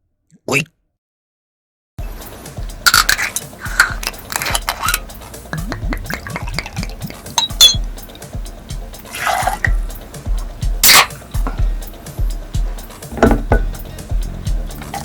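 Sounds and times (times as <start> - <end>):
dishes and cutlery clattering: 6.1 - 7.8, 13.1 - 13.8.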